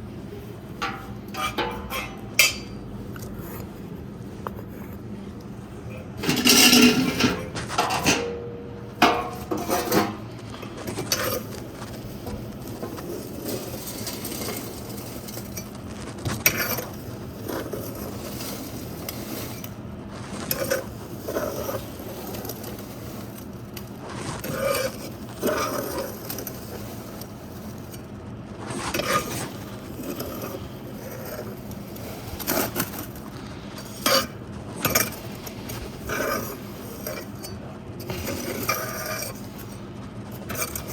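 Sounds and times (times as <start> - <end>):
metal tools scraping and clinking: 0.8 - 3.4, 6.2 - 15.7.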